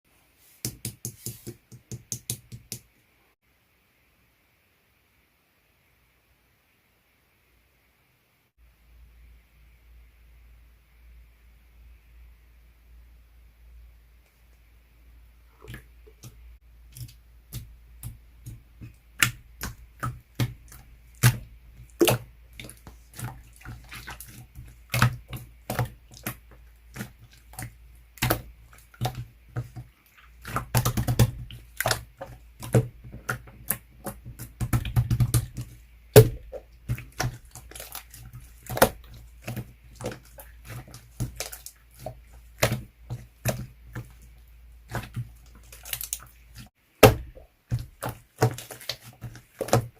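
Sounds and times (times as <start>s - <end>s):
slime squishing: 15.4s - 49.9s.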